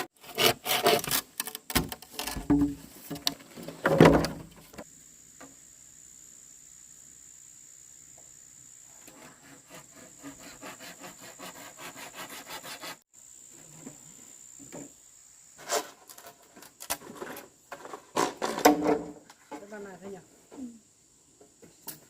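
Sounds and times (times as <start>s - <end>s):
rasping strokes on wood: 0.0s - 1.2s, 9.0s - 13.0s
high insect buzz: 0.0s - 18.4s.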